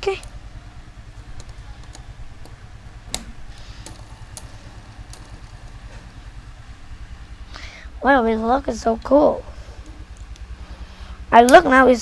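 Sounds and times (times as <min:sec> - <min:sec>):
low background hum: 0:00.0 - 0:12.0
plastic bricks clicking together: 0:01.2 - 0:05.8.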